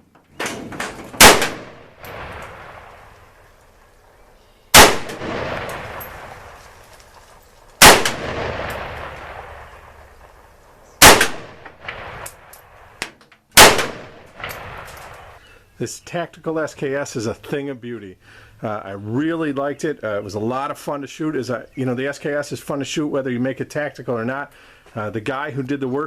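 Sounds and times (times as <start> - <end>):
rifle shots with rolling echo: 1.2 - 3.9, 4.7 - 13.0, 13.6 - 15.4.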